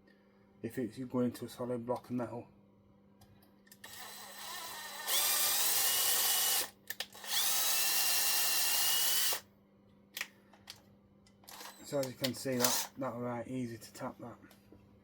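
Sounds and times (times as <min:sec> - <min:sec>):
electric drill whining: 0:03.8 - 0:09.4, 0:11.5 - 0:11.9, 0:12.6 - 0:12.9.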